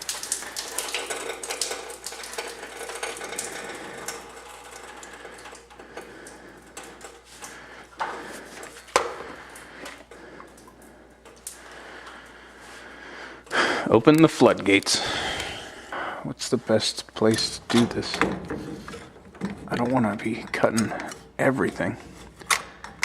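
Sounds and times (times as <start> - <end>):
tools clinking and scraping metal: 17.2 - 23.0.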